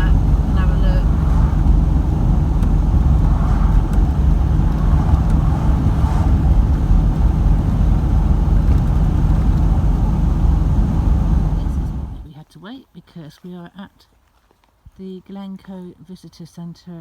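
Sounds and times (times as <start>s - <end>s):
vehicle engine and road rumble: 0.0s - 12.3s.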